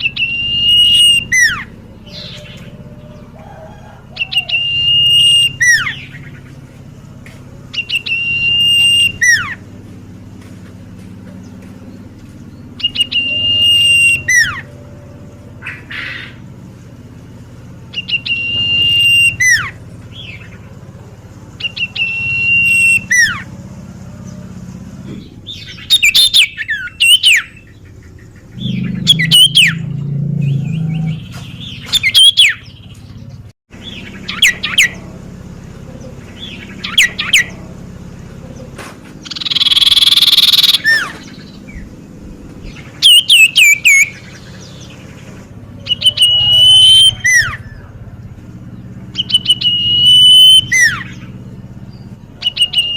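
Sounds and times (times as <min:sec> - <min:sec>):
bird whistling song: 0:00.0 - 0:03.3, 0:04.2 - 0:06.6, 0:07.7 - 0:09.6, 0:11.4 - 0:16.5, 0:17.9 - 0:20.6, 0:21.6 - 0:23.6, 0:25.5 - 0:32.9, 0:33.8 - 0:35.0, 0:36.0 - 0:37.6, 0:38.4 - 0:42.0, 0:42.6 - 0:45.1, 0:45.8 - 0:47.9, 0:49.1 - 0:52.9
bird chirping: 0:00.0 - 0:09.7, 0:11.0 - 0:23.6, 0:24.2 - 0:52.9
steady low hum: 0:00.0 - 0:52.9.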